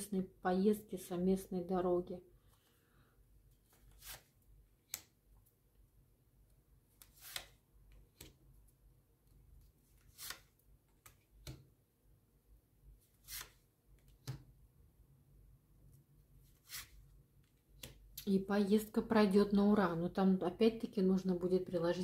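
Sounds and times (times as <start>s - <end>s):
cards rustling and clicking: 9.6s - 11.7s.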